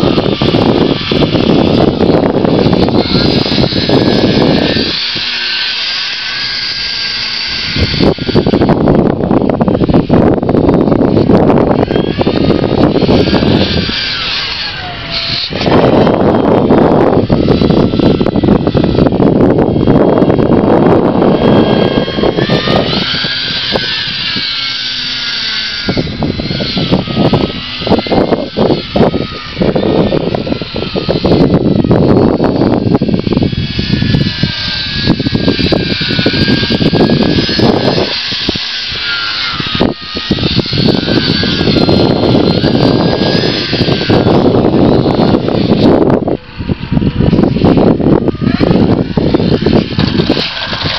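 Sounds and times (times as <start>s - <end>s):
model plane motor whining: 0.0s - 50.9s
wind buffeting microphone: 0.0s - 50.9s.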